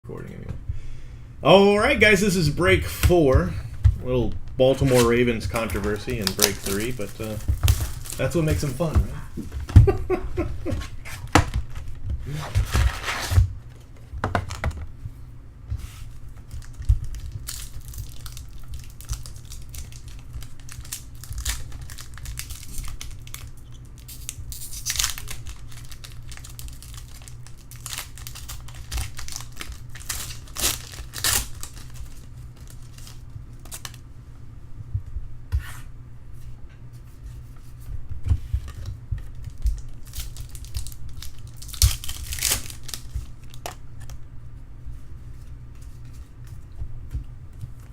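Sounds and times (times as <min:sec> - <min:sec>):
packaging tearing and crinkling: 0:04.7 - 0:08.9, 0:11.1 - 0:13.5, 0:16.5 - 0:34.0, 0:38.7 - 0:44.2.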